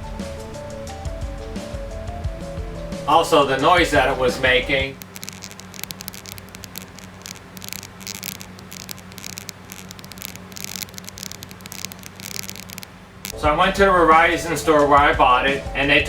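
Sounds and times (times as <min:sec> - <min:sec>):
camera crackling rattle: 0:03.1 - 0:15.6.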